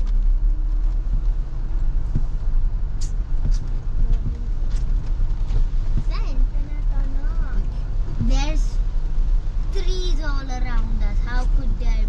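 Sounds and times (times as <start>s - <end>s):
car engine and road rumble: 0.0s - 12.0s.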